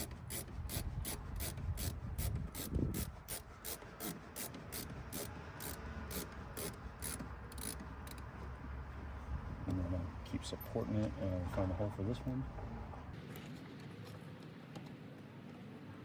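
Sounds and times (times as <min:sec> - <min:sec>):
screwdriver ratchet clicks: 0:00.0 - 0:08.2
screw turning: 0:00.0 - 0:08.3.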